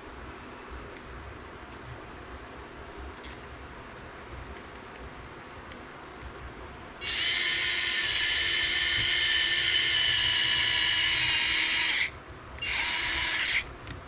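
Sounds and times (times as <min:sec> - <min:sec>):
electric screwdriver running: 0:07.0 - 0:13.6.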